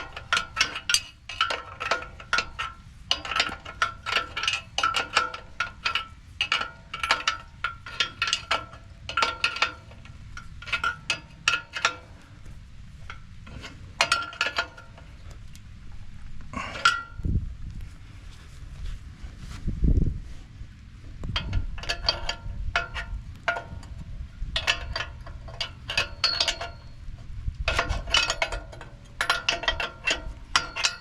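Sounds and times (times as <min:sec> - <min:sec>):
wrench clinking against bolt: 0:00.0 - 0:12.3, 0:13.0 - 0:15.1, 0:21.4 - 0:31.0.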